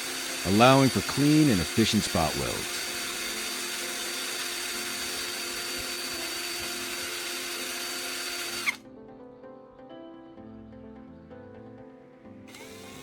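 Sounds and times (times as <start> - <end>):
electric drill motor whine: 0.0 - 8.9, 12.5 - 13.0
soft background music: 0.0 - 13.0.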